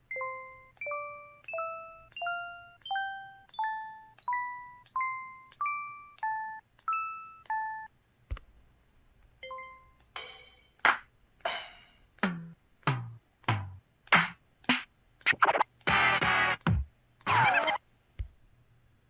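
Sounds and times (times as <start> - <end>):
scratchy noise burst: 17.3 - 17.8.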